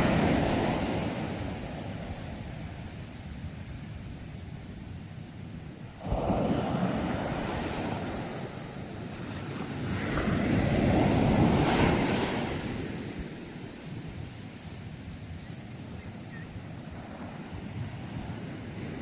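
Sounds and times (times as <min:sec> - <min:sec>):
ocean waves breaking: 0:00.0 - 0:03.3, 0:05.8 - 0:14.6, 0:16.2 - 0:19.0.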